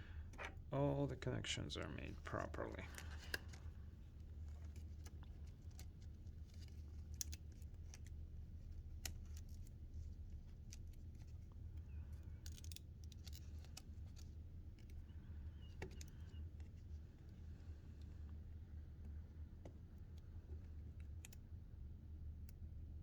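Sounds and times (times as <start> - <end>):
steady low hum: 0.0 - 23.0
light clicks of laptop parts: 2.7 - 3.8, 4.4 - 18.4, 19.0 - 21.6.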